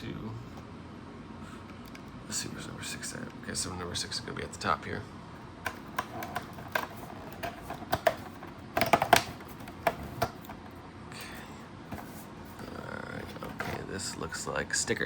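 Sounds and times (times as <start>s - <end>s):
cardboard packaging clicks and snaps: 5.7s - 10.6s.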